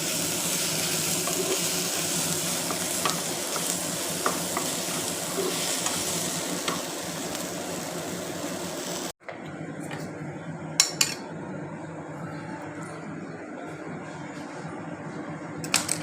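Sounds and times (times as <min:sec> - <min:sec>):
food sizzling in a hot pan: 0:00.0 - 0:09.1.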